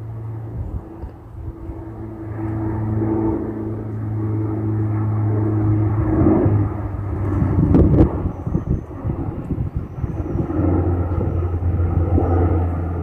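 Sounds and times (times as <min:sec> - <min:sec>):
aircraft engines droning: 0:00.0 - 0:13.0.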